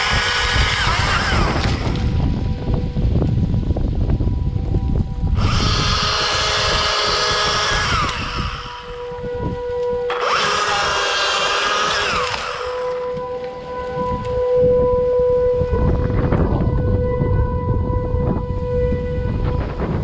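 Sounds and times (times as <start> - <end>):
chainsaw cutting wood: 0.0 - 2.1, 5.4 - 9.1, 10.1 - 13.2.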